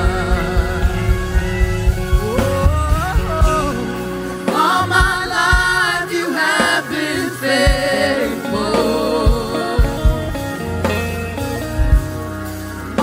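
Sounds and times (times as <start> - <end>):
person singing long notes: 2.1 - 10.8.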